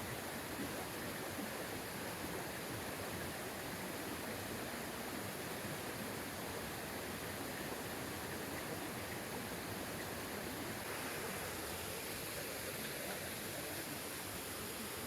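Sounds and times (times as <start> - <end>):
creek rushing: 10.6 - 15.0.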